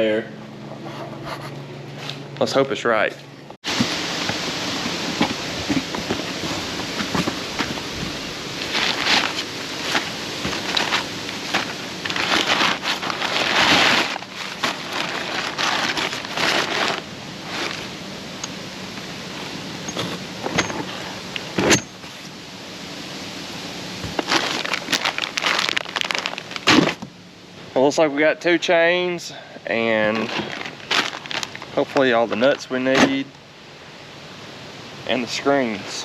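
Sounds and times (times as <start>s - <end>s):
packaging rustling and crackling: 3.7s - 18.0s, 24.0s - 27.1s, 30.1s - 32.1s.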